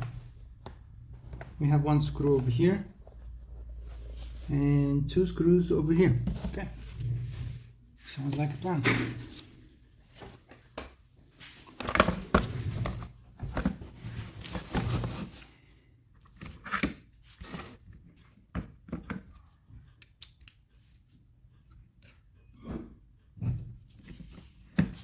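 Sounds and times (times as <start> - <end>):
tools and plastic parts clicking: 20.0 - 20.8.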